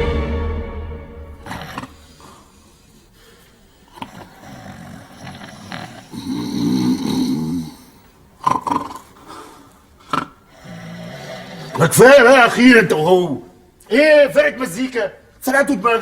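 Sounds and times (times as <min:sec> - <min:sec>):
man breathing asleep: 0:01.4 - 0:08.1, 0:09.0 - 0:11.8
man snoring: 0:03.9 - 0:09.1, 0:10.1 - 0:11.8.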